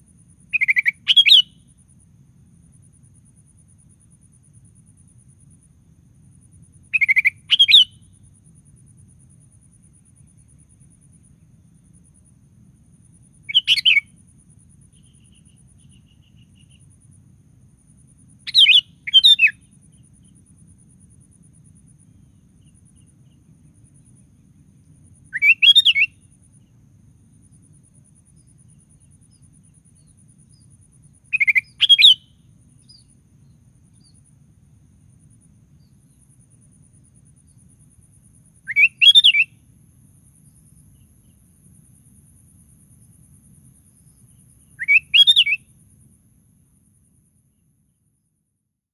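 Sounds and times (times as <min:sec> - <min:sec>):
bulbul singing whistled phrases: 0:00.5 - 0:01.7, 0:06.9 - 0:08.1, 0:13.4 - 0:14.2, 0:18.5 - 0:20.2, 0:25.3 - 0:26.2, 0:29.2 - 0:33.1, 0:38.6 - 0:39.5, 0:44.6 - 0:45.7.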